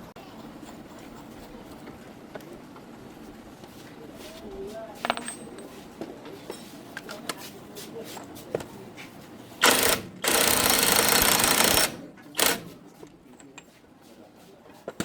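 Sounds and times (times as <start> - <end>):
metal tools clinking: 5.0 - 5.8
power tool rattling: 9.6 - 12.8.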